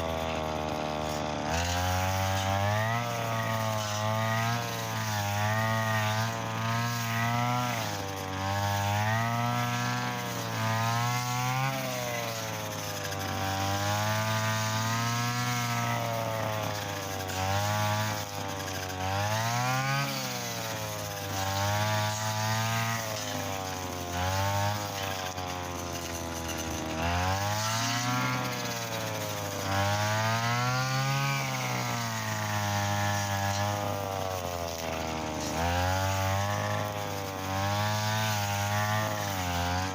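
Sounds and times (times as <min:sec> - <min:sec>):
brush cutter cutting grass: 0:00.0 - 0:39.9.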